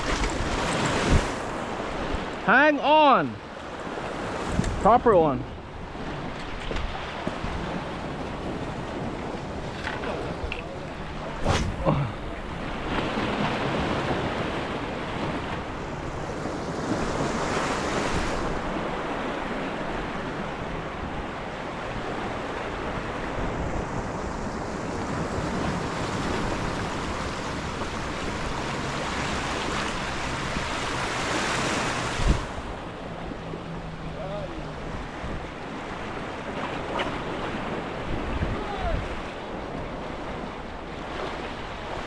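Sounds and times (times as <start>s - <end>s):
ocean surf washing ashore: 0.0s - 42.0s
short thump: 11.4s - 11.8s
wind buffeting microphone: 12.5s - 33.0s, 34.8s - 40.9s.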